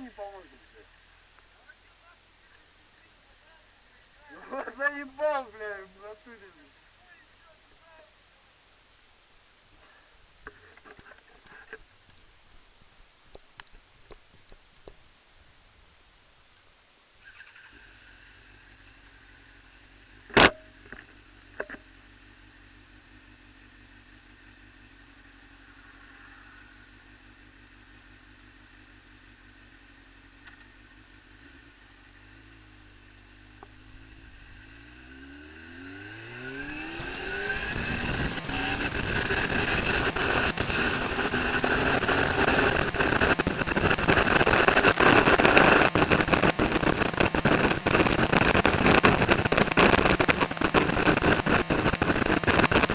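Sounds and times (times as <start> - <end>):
motorcycle engine: 0.0 - 7.6, 17.3 - 52.9
sharp click: 20.3 - 20.7.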